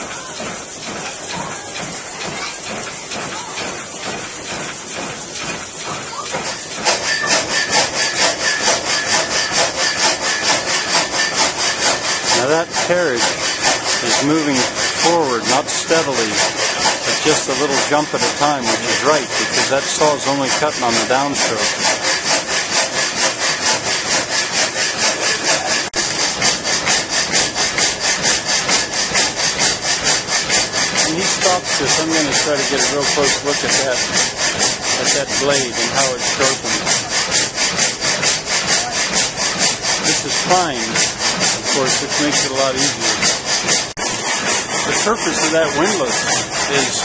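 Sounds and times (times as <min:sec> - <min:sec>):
saw blade rasping through log: 0:00.0 - 0:47.0.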